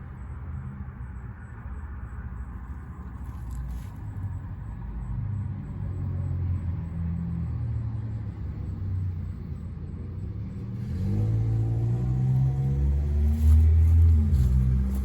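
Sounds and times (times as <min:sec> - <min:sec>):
car engine rumbling: 0:08.0 - 0:15.0.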